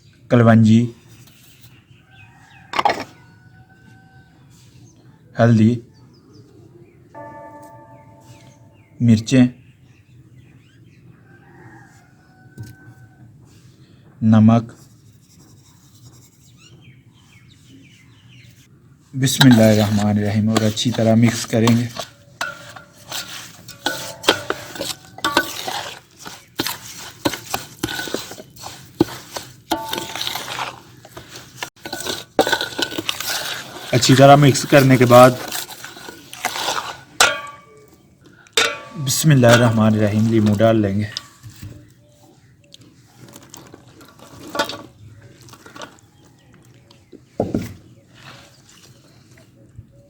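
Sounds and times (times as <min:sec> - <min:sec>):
spoon scraping and clinking vessel: 0:07.2 - 0:08.7, 0:19.3 - 0:38.0, 0:38.6 - 0:41.4.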